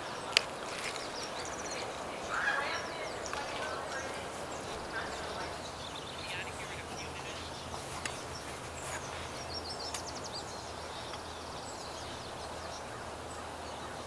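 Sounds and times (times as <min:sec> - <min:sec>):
birds chirping: 0:00.0 - 0:14.0
steady low hum: 0:00.0 - 0:14.0.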